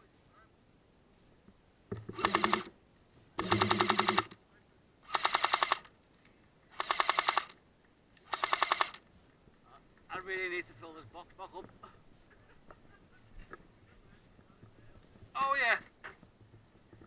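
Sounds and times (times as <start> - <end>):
airsoft machine gun bursts: 2.1 - 2.7, 3.4 - 4.4, 5.0 - 5.9, 6.7 - 7.6, 8.2 - 9.0.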